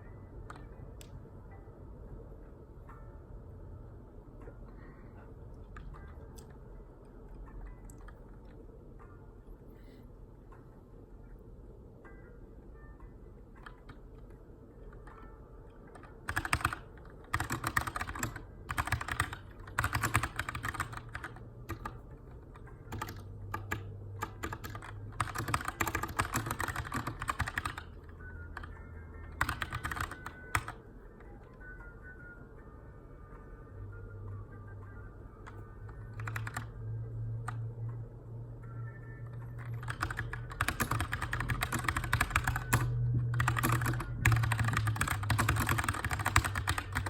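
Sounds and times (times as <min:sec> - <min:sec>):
mechanical keyboard typing: 0:15.9 - 0:30.8, 0:35.4 - 0:36.7, 0:39.3 - 0:47.0.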